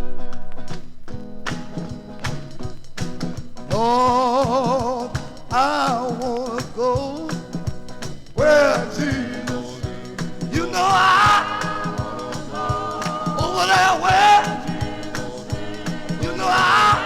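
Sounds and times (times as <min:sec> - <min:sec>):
steady beat: 0:01.2 - 0:17.0
man singing with vibrato: 0:03.7 - 0:07.5, 0:08.4 - 0:17.0.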